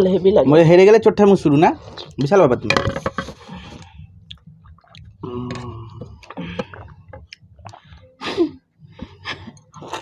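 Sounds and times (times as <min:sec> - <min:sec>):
eating clicks and squishes: 0:03.8 - 0:08.1.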